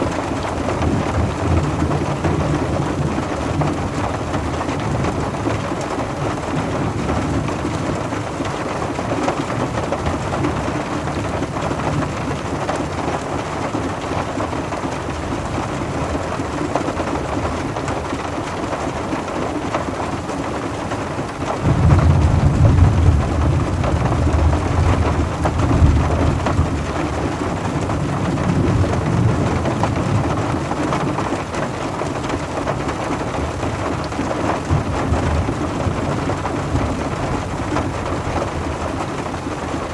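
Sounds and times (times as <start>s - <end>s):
rain falling on a car: 0.0s - 39.9s
thunder rumbling: 21.6s - 31.6s, 32.2s - 39.9s.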